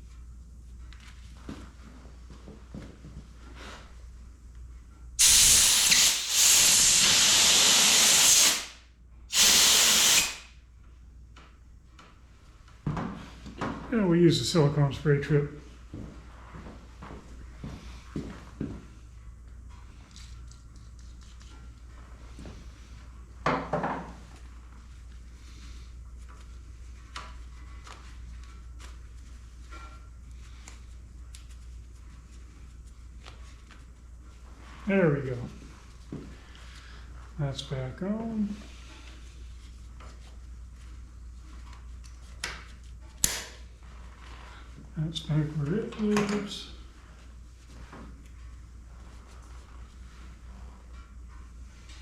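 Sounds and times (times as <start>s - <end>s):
steady low hum: 0.0s - 5.2s
aerosol spray hissing: 5.2s - 10.5s.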